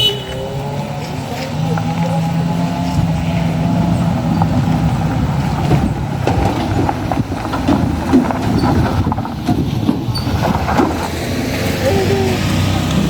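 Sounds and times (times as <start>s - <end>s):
bus air horn chord: 0.0s - 0.6s
bus engine rumble: 0.0s - 13.0s
road noise: 0.0s - 13.0s.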